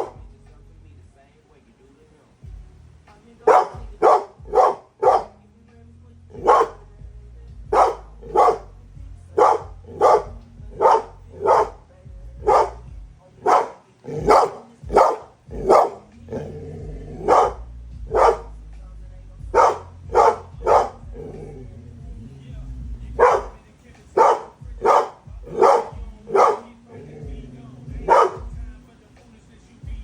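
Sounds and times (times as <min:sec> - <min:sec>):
puppy barking: 0:00.0 - 0:00.2, 0:03.4 - 0:05.4, 0:06.3 - 0:06.9, 0:07.7 - 0:11.8, 0:12.4 - 0:18.5, 0:19.5 - 0:23.6, 0:24.2 - 0:28.6.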